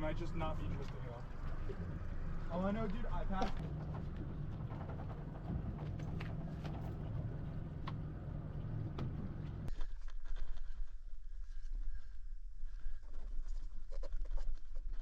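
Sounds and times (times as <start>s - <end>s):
gear knocking on hull: 0.0s - 9.7s
low boat rumble: 0.0s - 9.7s.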